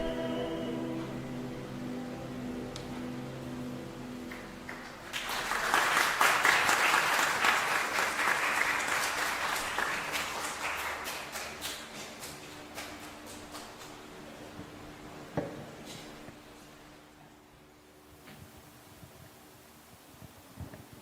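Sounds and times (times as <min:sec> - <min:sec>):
congregation applauding: 0:04.2 - 0:13.9.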